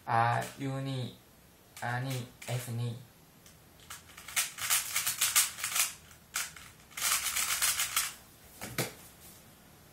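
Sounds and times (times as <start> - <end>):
puzzle cube layers clacking: 3.8 - 8.2.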